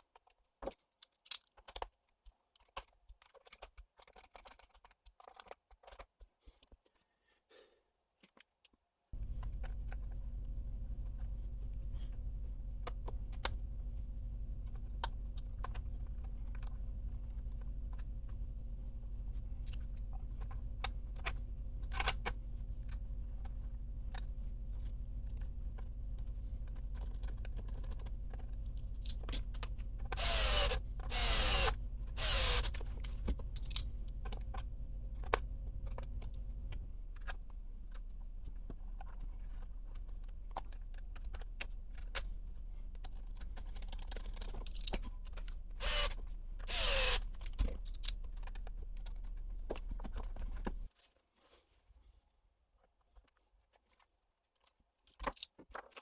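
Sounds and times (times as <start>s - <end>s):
small electric motor whine: 9.2s - 38.5s, 42.7s - 48.4s
low steady hum: 9.2s - 50.9s.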